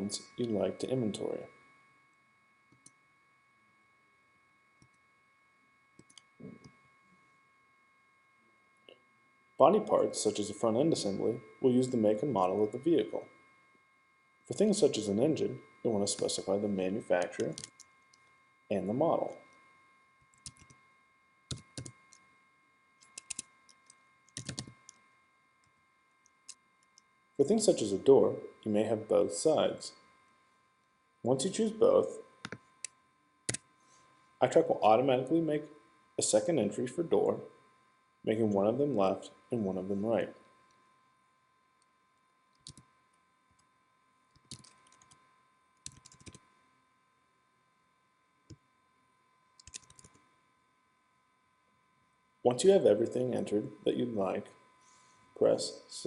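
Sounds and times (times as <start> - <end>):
faint steady high tone: 0.0 - 56.0
computer keyboard typing: 17.2 - 17.9, 20.3 - 20.8, 21.5 - 22.2, 23.0 - 25.0, 42.6 - 42.9, 44.4 - 45.2, 45.8 - 46.4, 49.6 - 50.2.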